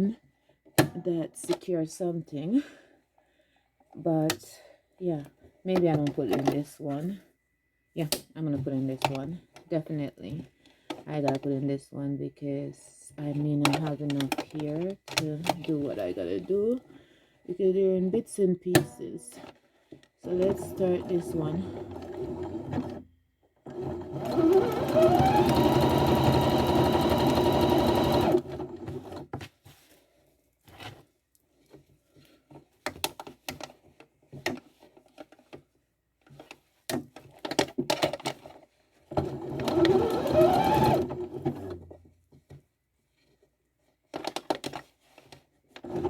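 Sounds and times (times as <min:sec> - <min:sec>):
sewing machine whining: 0:20.3 - 0:23.0, 0:23.7 - 0:29.2, 0:39.2 - 0:41.8.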